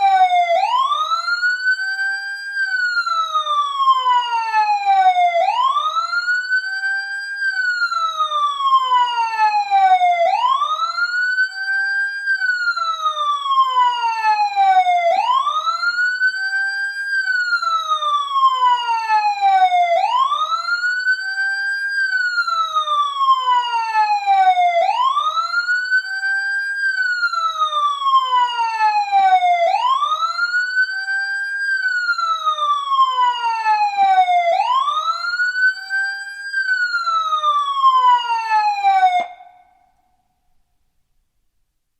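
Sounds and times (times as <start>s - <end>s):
police siren wailing: 0.0s - 40.0s.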